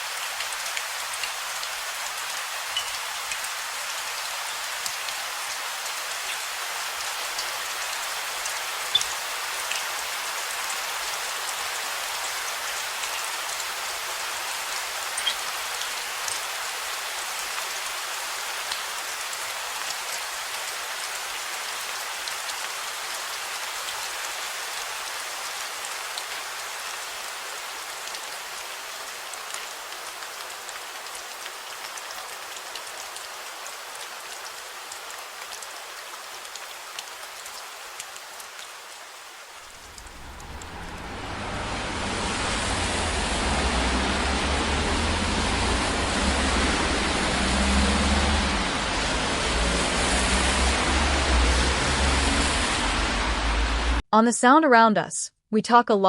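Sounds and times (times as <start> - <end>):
rain on hard surfaces: 0.0 - 54.0.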